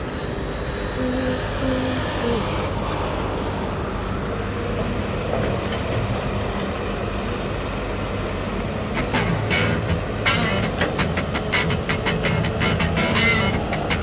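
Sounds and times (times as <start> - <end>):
construction machinery engine drone: 0.0 - 14.0.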